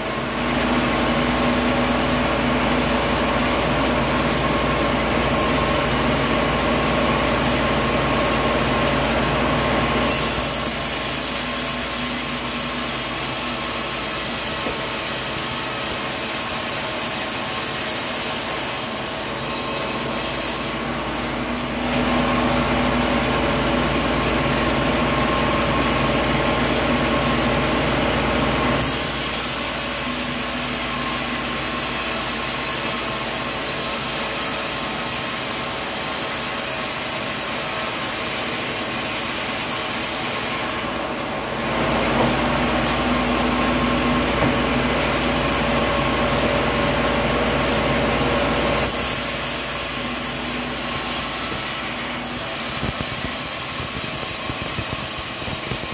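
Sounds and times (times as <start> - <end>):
sawmill machinery running: 0.0 - 55.9.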